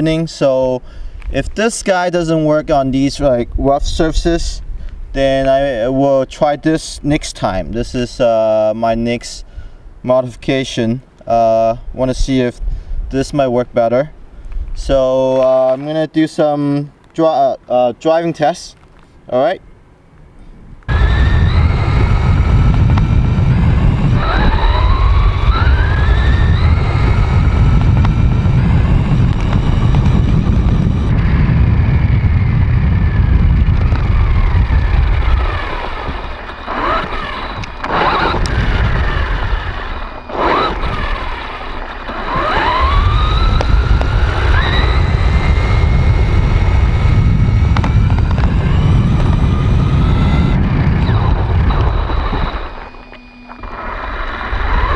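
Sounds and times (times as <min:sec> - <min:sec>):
rc car motor whine: 0:20.9 - 0:54.9.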